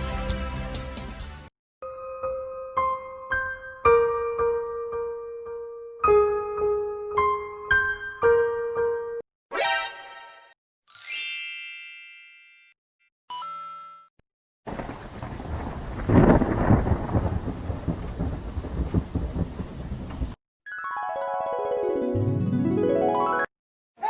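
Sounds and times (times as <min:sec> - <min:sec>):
ringing chime tones: 0:10.9 - 0:14.1
steady rain: 0:14.7 - 0:20.4
thunder rumble: 0:14.7 - 0:20.4.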